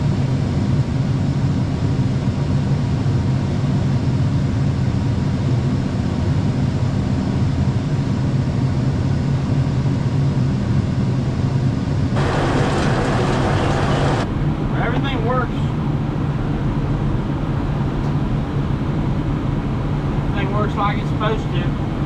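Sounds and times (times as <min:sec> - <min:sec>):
vehicle engine running: 0:12.2 - 0:14.3.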